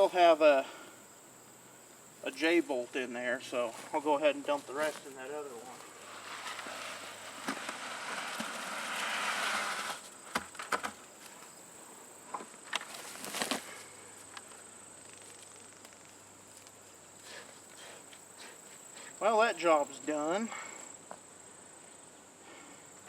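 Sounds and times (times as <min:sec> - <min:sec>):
container knocks and scrapes: 0:05.8 - 0:10.9
wet concrete pouring: 0:06.0 - 0:10.0.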